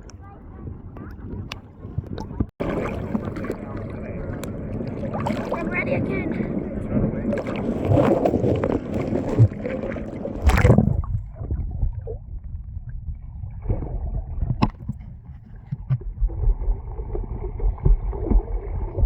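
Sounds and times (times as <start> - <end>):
muffled underwater rumble: 0.0 - 19.0
water splash: 1.0 - 12.2.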